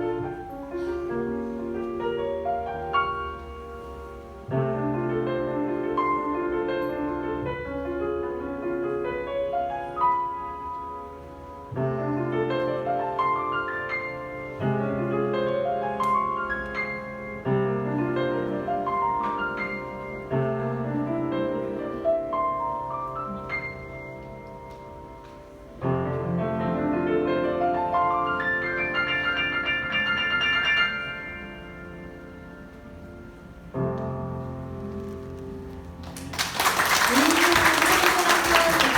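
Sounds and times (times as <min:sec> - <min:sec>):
slow classical solo piano: 0:00.0 - 0:36.3.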